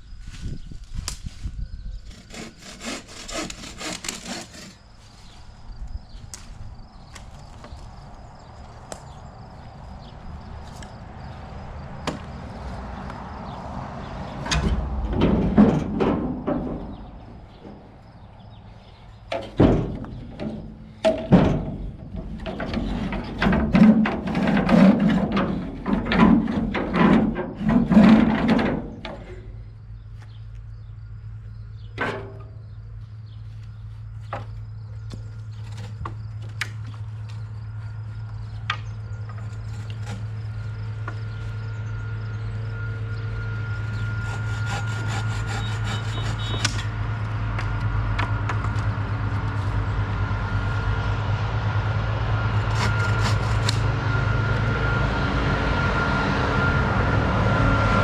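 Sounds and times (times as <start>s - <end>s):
steady low hum: 0.0s - 58.0s
axe chopping wood: 12.0s - 12.3s.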